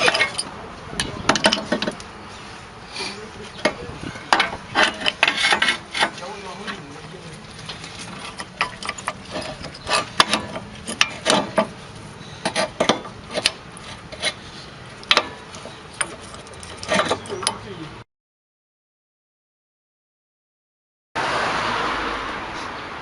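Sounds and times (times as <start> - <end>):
tools and metal parts clicking: 0.0 - 2.1, 8.0 - 11.7, 15.0 - 17.7.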